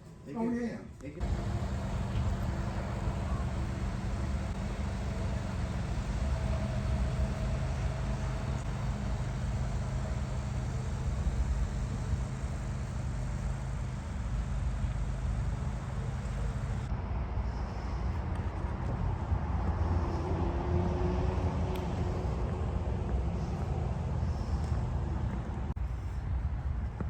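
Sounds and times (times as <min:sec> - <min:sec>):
car cabin road rumble: 0:01.2 - 0:16.9.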